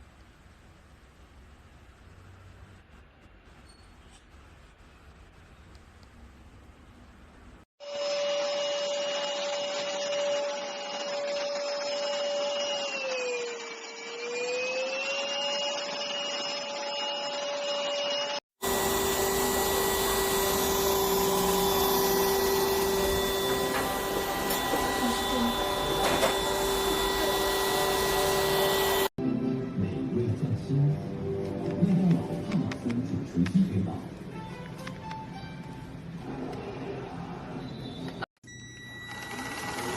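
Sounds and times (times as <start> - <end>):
vacuum cleaner motor whine: 7.8 - 29.1.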